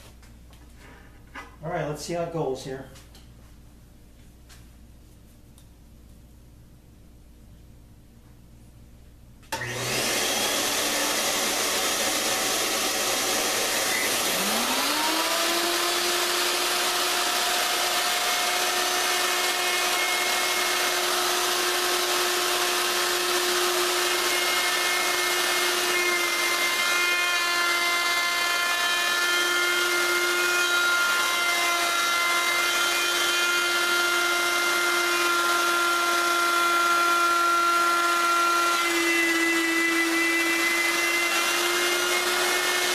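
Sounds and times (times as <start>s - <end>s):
router motor whining: 9.5s - 42.9s.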